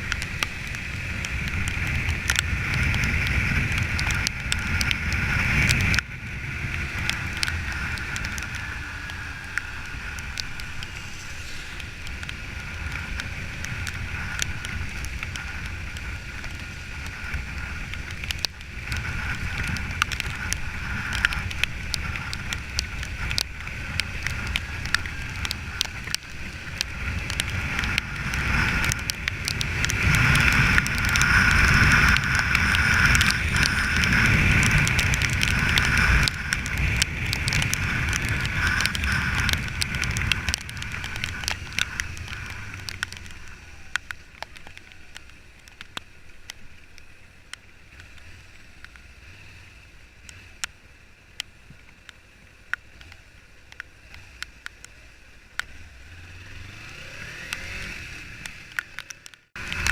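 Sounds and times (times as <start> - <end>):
raindrop ticks: 0.0 - 59.9
wind and motorcycle road noise: 0.0 - 59.9.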